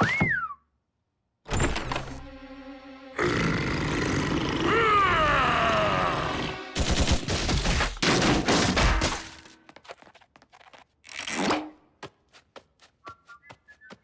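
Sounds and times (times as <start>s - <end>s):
falling cry: 3.2s - 6.6s.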